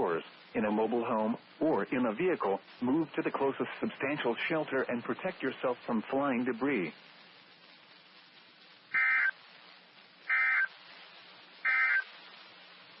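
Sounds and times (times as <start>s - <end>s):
faint radio hiss: 0.0s - 13.0s
digital data bursts: 8.9s - 9.4s, 10.3s - 10.7s, 11.6s - 12.1s.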